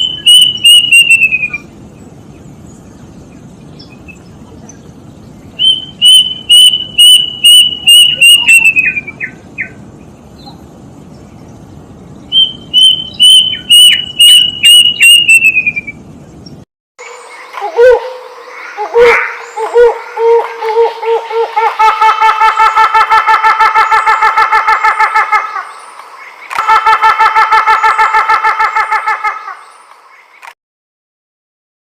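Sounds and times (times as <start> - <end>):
bird whistling rapid notes: 0.0 - 1.6, 5.6 - 9.3, 12.3 - 16.0
lower repeated bird calls: 0.0 - 30.6.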